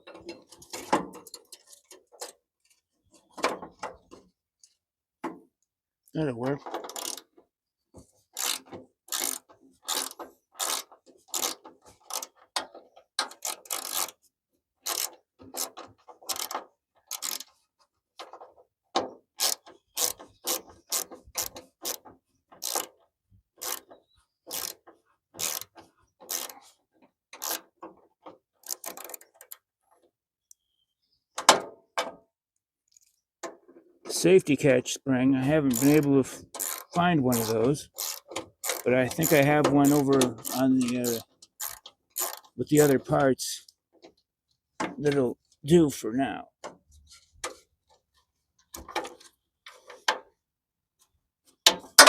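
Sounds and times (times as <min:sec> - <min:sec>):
ratchet wrench clicking: 0:06.8 - 0:07.3, 0:08.4 - 0:12.3, 0:13.3 - 0:14.2, 0:14.8 - 0:15.7, 0:16.3 - 0:17.5, 0:19.4 - 0:22.0, 0:22.6 - 0:22.9, 0:23.6 - 0:23.8, 0:24.5 - 0:24.8, 0:25.4 - 0:25.7, 0:26.3 - 0:26.6, 0:27.4 - 0:27.6, 0:28.6 - 0:29.6, 0:35.7 - 0:43.0.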